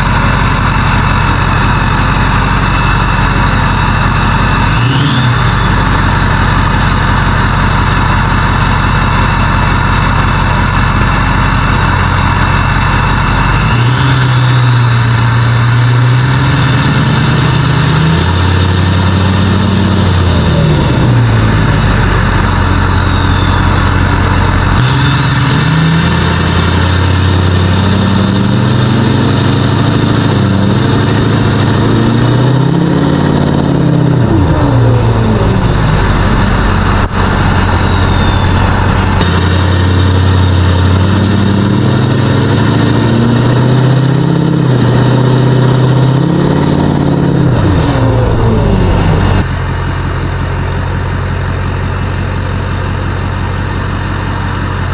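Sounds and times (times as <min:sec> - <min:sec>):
turbo whistle: 0:00.0 - 0:49.5
diesel truck engine accelerating: 0:00.0 - 0:54.9.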